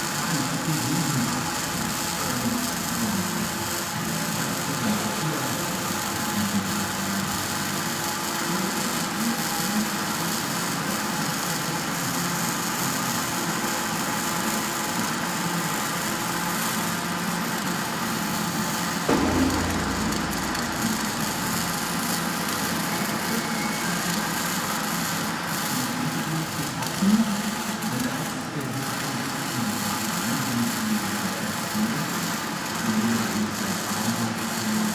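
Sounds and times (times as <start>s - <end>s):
deep rumble: 19.1s - 22.5s
machine humming: 19.1s - 23.2s.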